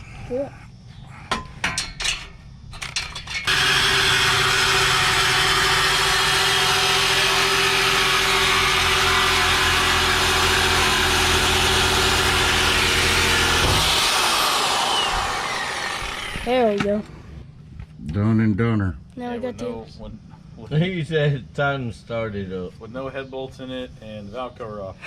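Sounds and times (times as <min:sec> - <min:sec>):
power saw cutting steel pipe: 0:02.8 - 0:16.8.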